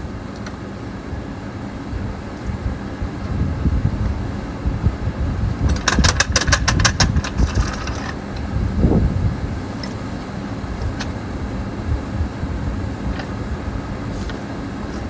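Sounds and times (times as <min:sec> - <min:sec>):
low vehicle rumble: 0:00.0 - 0:15.0
car jack metallic clicks: 0:05.7 - 0:08.1.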